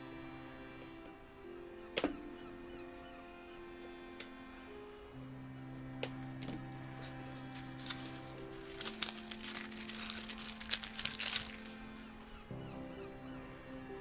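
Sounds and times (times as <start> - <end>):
crackly clicks: 0.0 - 13.8
soft background music: 0.0 - 14.0
plastic packaging crinkling: 5.8 - 12.5.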